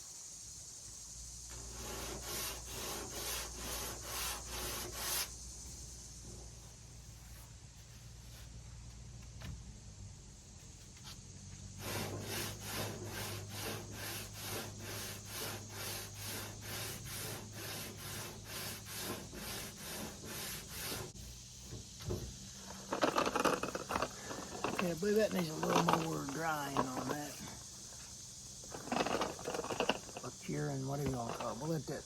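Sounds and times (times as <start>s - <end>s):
sandpaper rubbing: 1.5s - 5.4s, 11.8s - 21.3s.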